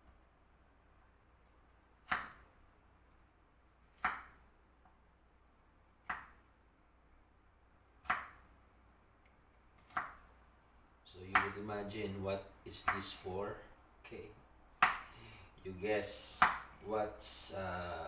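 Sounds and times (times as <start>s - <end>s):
knife chopping on cutting board: 2.0s - 2.4s, 3.9s - 4.4s, 6.0s - 6.4s, 8.0s - 8.4s, 9.8s - 10.2s, 11.3s - 11.6s, 12.8s - 13.2s, 14.8s - 15.1s, 16.4s - 16.7s.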